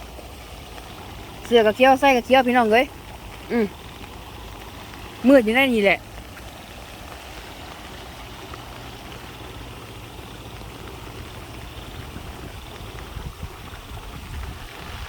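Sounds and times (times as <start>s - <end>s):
running water: 0.0s - 15.0s
steady rain: 0.0s - 15.0s
wind rumble on microphone: 6.2s - 15.0s.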